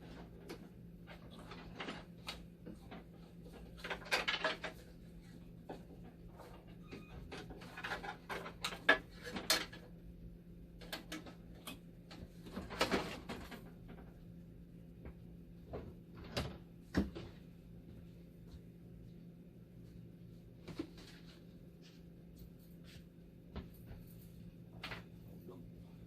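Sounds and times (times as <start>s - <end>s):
clicks and rattles handling parts: 0.0s - 5.0s, 5.6s - 9.9s
steady low hum: 4.6s - 26.0s.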